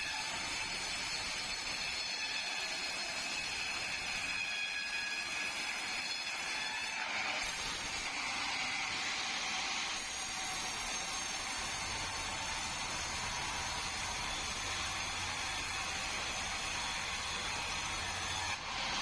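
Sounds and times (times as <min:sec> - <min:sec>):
sawmill machinery whining: 0:07.0 - 0:19.0.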